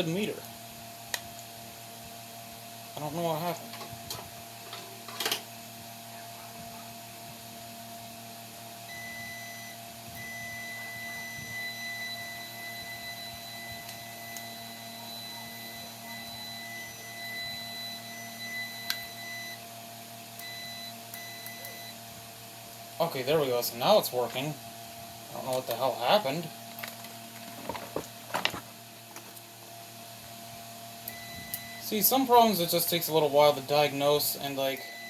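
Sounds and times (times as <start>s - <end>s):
high continuity beep: 8.9s - 19.6s, 20.4s - 22.0s, 31.1s - 31.9s, 34.8s - 35.0s.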